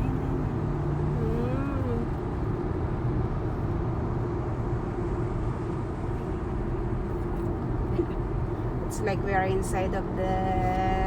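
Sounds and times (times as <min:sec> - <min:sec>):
road and tyre noise in car cabin: 0:00.0 - 0:11.0.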